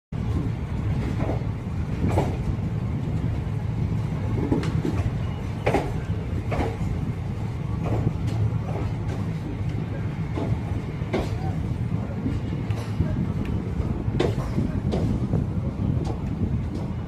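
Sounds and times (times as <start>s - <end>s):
train rumbling on track: 0.1s - 17.0s
train wheels clacking: 0.9s - 2.6s, 4.0s - 15.4s.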